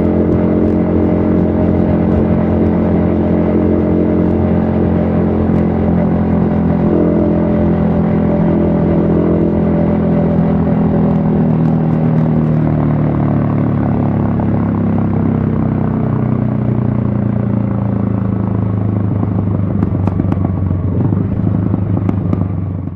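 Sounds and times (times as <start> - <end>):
motorcycle engine running: 0.0 - 22.9.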